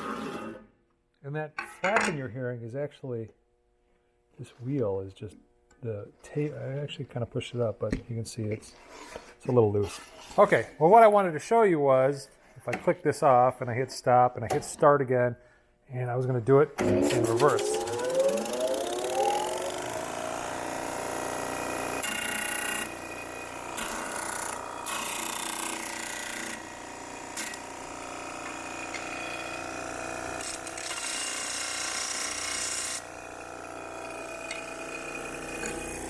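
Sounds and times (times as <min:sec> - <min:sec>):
grinder motor humming: 0:16.8 - 0:36.0.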